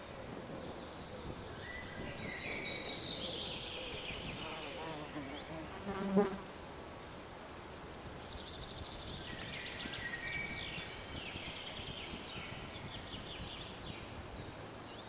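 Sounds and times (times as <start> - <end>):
birds singing: 0.6 - 5.7
flying insect buzzing: 4.3 - 6.5.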